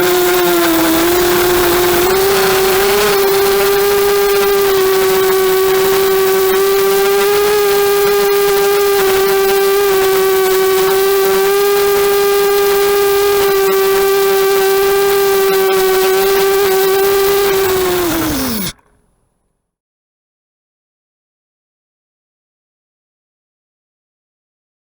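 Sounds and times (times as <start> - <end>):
quadcopter motors whining: 0.0 - 19.1.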